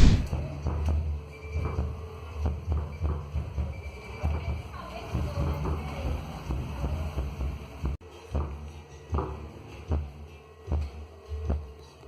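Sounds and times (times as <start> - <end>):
deep bass thumps: 0.0 - 0.4.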